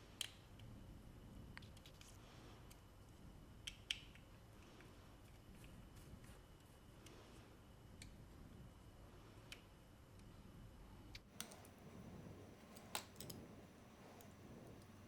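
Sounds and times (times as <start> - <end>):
low room hum: 0.0 - 15.0
plastic puzzle cube parts clicking: 11.3 - 11.8, 12.5 - 14.9.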